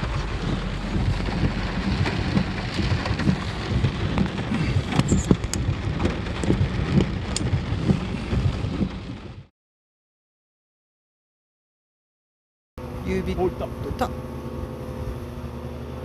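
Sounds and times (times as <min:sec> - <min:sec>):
heavy rain: 0:00.0 - 0:09.5
low thuds: 0:00.0 - 0:09.5
sharp clicks: 0:00.9 - 0:07.9.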